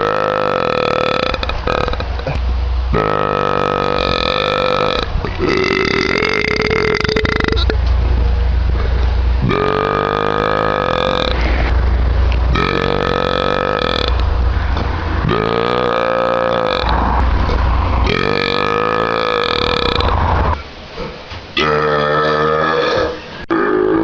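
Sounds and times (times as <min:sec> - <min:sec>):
man burping loudly: 0:00.0 - 0:07.8, 0:09.4 - 0:11.6, 0:12.5 - 0:14.2, 0:15.2 - 0:17.0, 0:18.1 - 0:20.2, 0:21.6 - 0:24.0.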